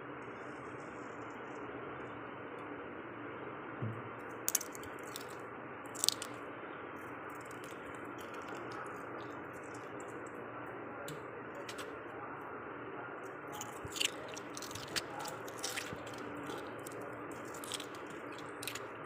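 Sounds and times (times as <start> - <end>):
crunching frost being chewed: 4.5 - 6.4, 7.0 - 12.0, 13.4 - 19.0.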